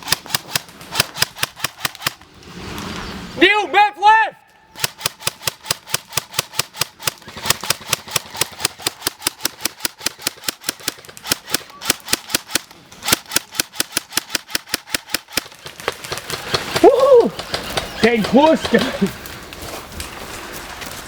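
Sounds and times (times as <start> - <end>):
airsoft gun rapid firing: 0.0 - 2.2, 4.8 - 19.1.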